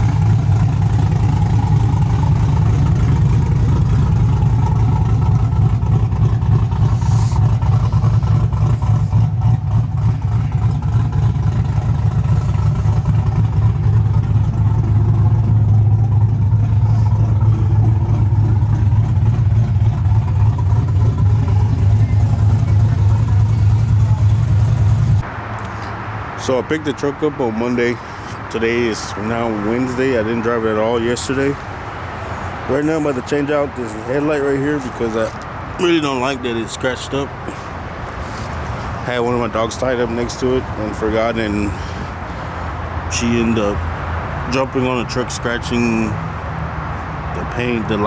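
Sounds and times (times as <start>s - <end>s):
pickup engine and exhaust drone: 0.0s - 48.0s
road noise: 0.0s - 48.0s.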